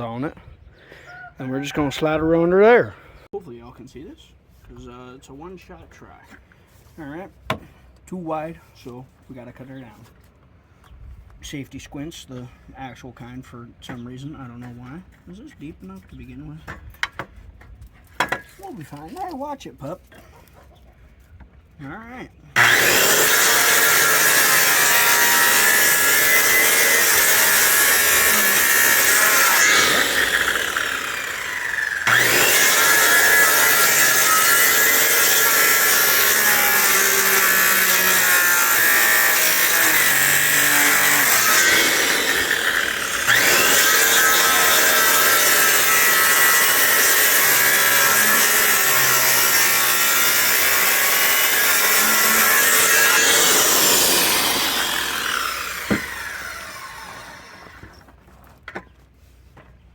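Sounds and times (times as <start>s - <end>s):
power tool cutting wood: 1.5s - 2.9s, 22.6s - 58.0s.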